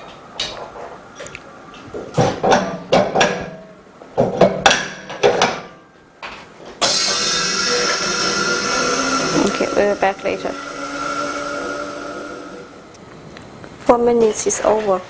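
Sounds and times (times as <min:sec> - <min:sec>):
machine hiss and hum: 0:06.8 - 0:13.9.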